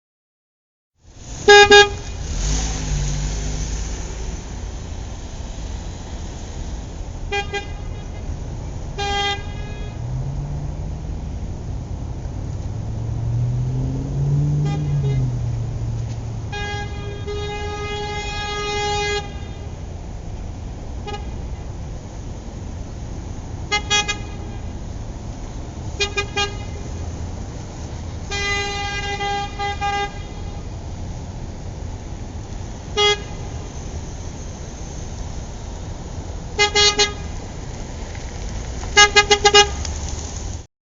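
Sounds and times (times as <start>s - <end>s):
car horn honking: 1.4s - 2.6s, 7.3s - 8.3s, 8.9s - 10.2s, 14.4s - 15.6s, 16.4s - 19.8s, 21.0s - 21.5s, 23.6s - 24.8s, 25.9s - 26.9s, 28.2s - 30.7s, 32.9s - 33.8s, 36.6s - 37.4s, 39.0s - 39.8s.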